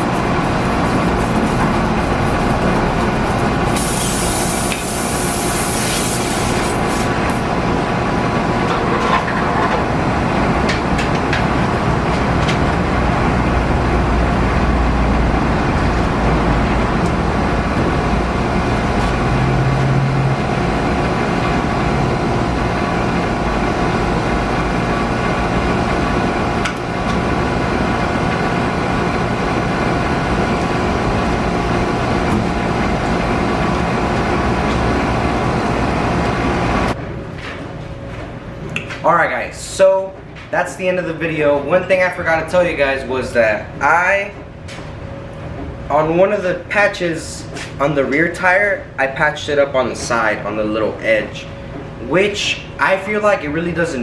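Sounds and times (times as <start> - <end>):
machine drone: 0.0 - 38.8.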